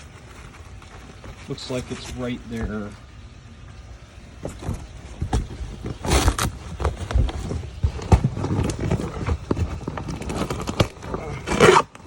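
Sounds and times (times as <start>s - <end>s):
packaging rustling and tearing: 4.4s - 12.0s.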